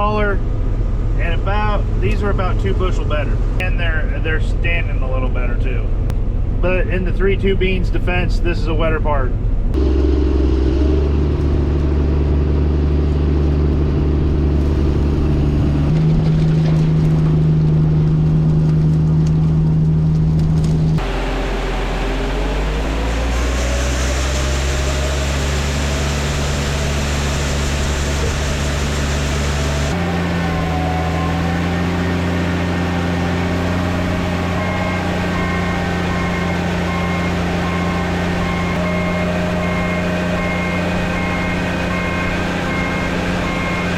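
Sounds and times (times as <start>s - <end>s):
combine harvester drone: 0.0s - 43.9s
high beeping: 34.4s - 43.9s.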